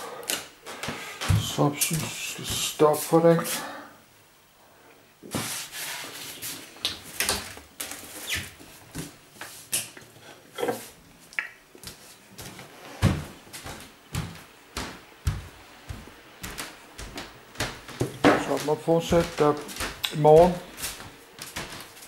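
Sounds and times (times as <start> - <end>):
heavy thumps: 1.2 - 2.8.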